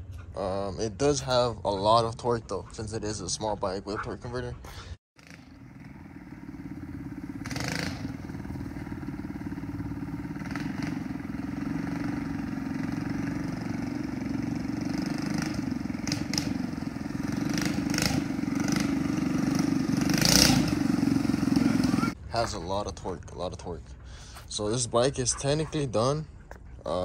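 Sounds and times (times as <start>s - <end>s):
mini bike engine running: 5.2s - 22.2s.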